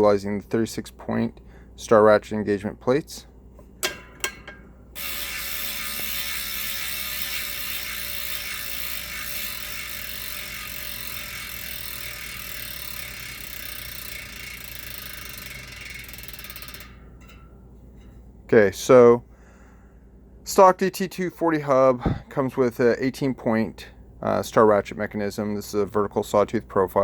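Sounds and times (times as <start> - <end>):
bicycle hub freewheeling buzz: 4.3 - 17.6.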